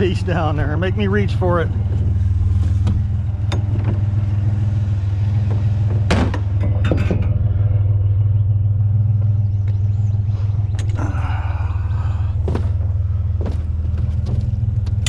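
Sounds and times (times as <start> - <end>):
truck engine idling: 0.0 - 15.0
metal clanks: 5.3 - 7.6.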